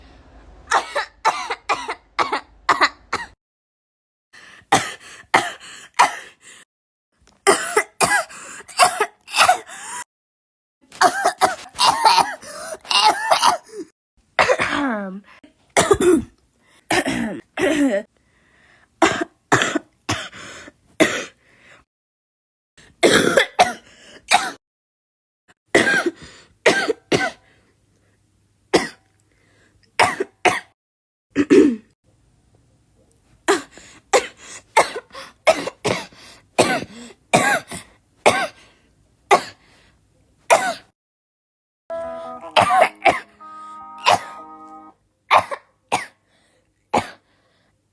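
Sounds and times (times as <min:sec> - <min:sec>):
girl coughing: 0:00.7 - 0:03.4, 0:04.7 - 0:06.4, 0:07.4 - 0:09.7, 0:11.0 - 0:15.1, 0:15.8 - 0:18.1, 0:19.0 - 0:20.3, 0:21.0 - 0:21.4, 0:23.0 - 0:24.6, 0:25.7 - 0:27.4, 0:30.0 - 0:30.8, 0:31.4 - 0:31.9, 0:33.5 - 0:38.6, 0:39.3 - 0:39.6, 0:40.5 - 0:40.9, 0:42.6 - 0:43.3, 0:44.0 - 0:44.4, 0:45.3 - 0:46.2, 0:47.0 - 0:47.2.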